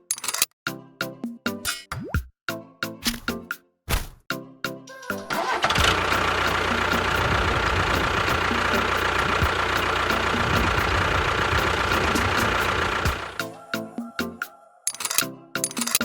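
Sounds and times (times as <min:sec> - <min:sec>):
small motor whining: 0:05.6 - 0:13.4.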